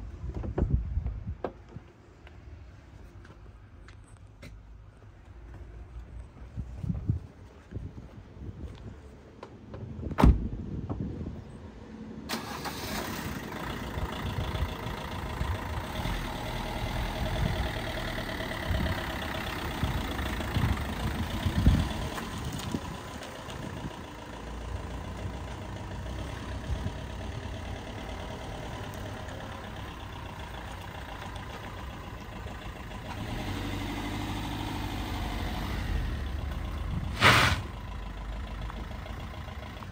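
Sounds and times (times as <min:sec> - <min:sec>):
diesel engine starting and idling: 0:12.1 - 0:39.9.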